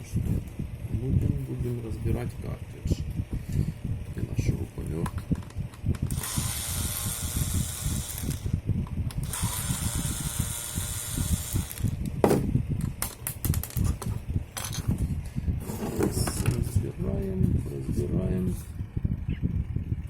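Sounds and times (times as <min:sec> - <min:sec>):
cordless drill running: 0:05.7 - 0:12.1.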